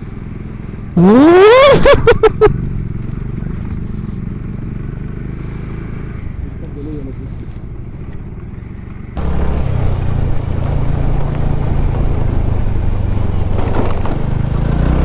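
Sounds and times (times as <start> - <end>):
motorcycle engine running: 0.0 - 13.4.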